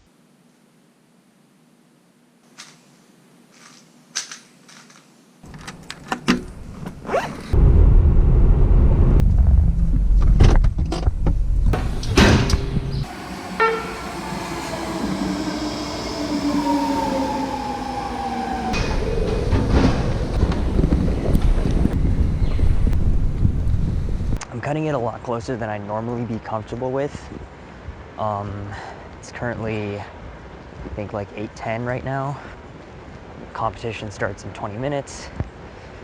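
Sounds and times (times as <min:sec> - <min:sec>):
train rumbling: 0:06.5 - 0:24.4.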